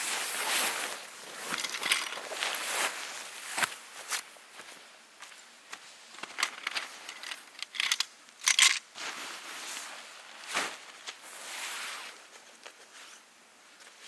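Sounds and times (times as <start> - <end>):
material crinkling and rustling: 0.0 - 4.3, 6.1 - 14.0.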